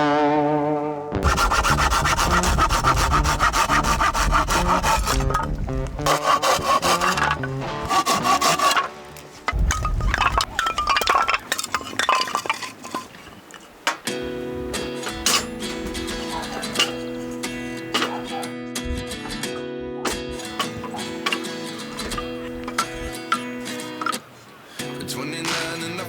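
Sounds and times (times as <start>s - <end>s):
hand saw cutting wood: 1.2s - 9.2s, 14.9s - 18.4s, 20.1s - 24.0s.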